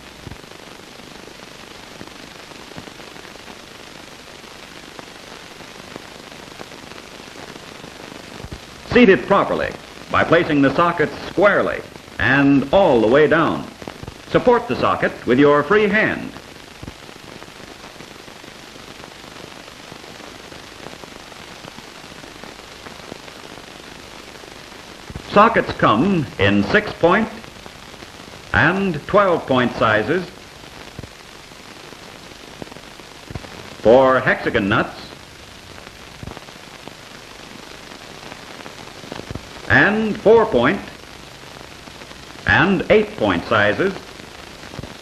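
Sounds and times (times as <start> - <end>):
background hiss: 0.0 - 45.0
faint crackles and clicks: 0.0 - 45.0.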